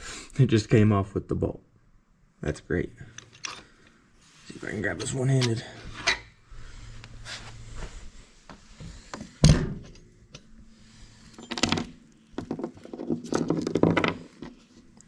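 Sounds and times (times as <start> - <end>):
metal parts clicking and clinking: 11.3 - 14.5.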